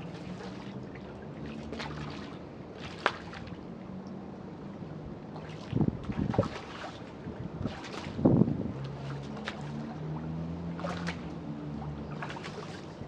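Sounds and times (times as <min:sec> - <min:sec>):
wind on microphone: 0:05.7 - 0:11.3.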